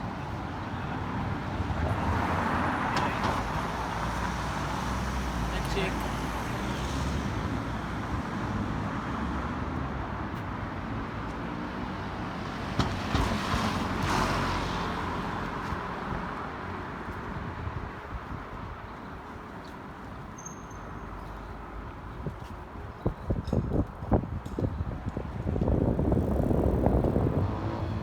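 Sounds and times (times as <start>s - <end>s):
road traffic: 0.0s - 28.0s
vehicle passing: 25.7s - 28.0s.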